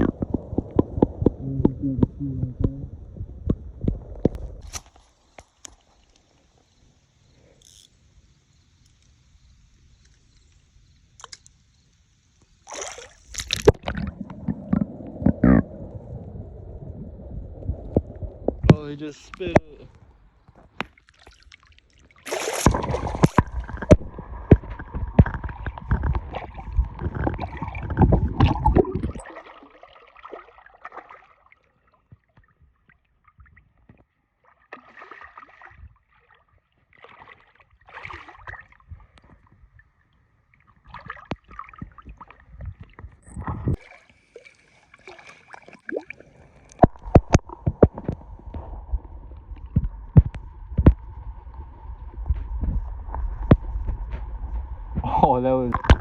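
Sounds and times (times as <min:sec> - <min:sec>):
water sloshing and gurgling: 0:00.0 - 0:07.9, 0:12.5 - 0:56.0
short splashes: 0:12.6 - 0:14.2, 0:20.7 - 0:32.0, 0:34.4 - 0:39.5, 0:43.5 - 0:48.1.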